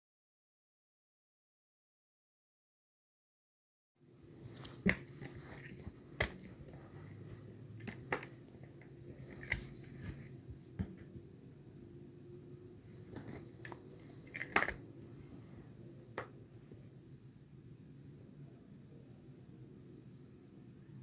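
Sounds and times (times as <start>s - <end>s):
faint steady hum: 4.0s - 21.0s.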